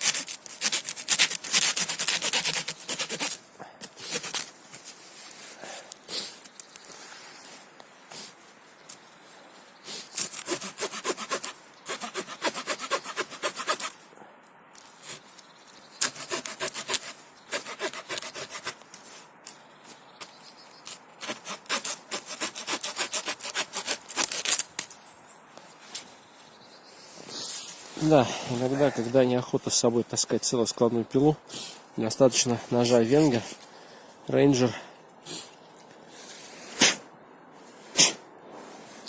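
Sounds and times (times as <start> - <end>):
small saw cutting a stick: 0.0 - 4.5, 10.1 - 14.0, 16.0 - 18.8, 20.9 - 24.8.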